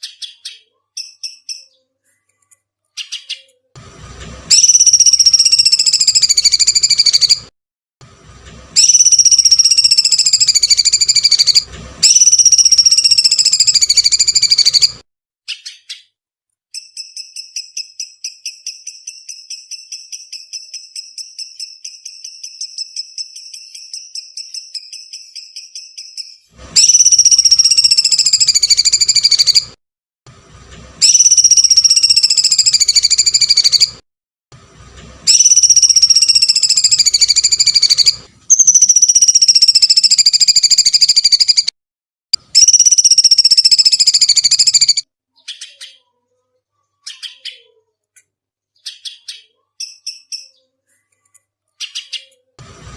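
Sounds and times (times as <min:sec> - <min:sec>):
rapid bird trill: 0:00.0 - 0:01.9, 0:04.5 - 0:07.5, 0:08.8 - 0:29.8, 0:31.0 - 0:34.0, 0:35.3 - 0:41.7, 0:42.4 - 0:46.1, 0:48.8 - 0:50.8
shrill bird screeching calls: 0:04.5 - 0:07.5, 0:08.8 - 0:16.1, 0:16.8 - 0:29.8, 0:31.0 - 0:34.0, 0:35.3 - 0:41.7, 0:42.6 - 0:46.0.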